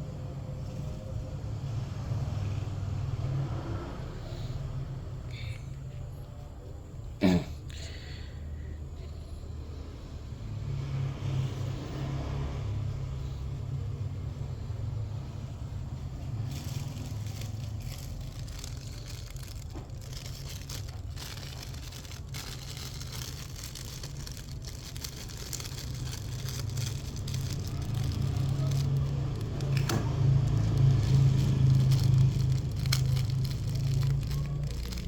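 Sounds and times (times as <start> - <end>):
low rumble: 13.0 - 35.0
plastic crinkling and tearing: 16.2 - 35.0.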